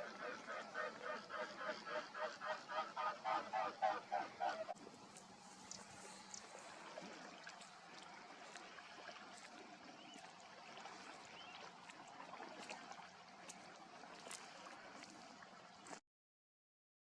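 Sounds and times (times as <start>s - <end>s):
water lapping and trickling: 0.0s - 16.0s
small ticks: 5.1s - 6.6s.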